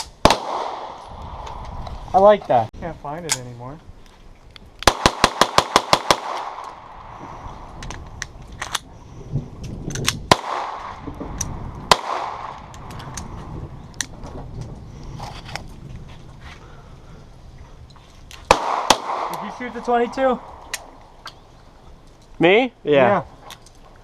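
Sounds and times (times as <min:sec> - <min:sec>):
gunshots: 0:00.2 - 0:01.0, 0:04.8 - 0:07.2, 0:10.3 - 0:11.1, 0:11.9 - 0:12.7, 0:18.5 - 0:20.8.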